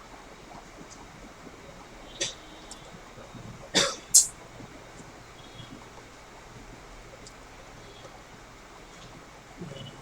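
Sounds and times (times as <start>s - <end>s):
steady hiss: 3.8s - 4.4s.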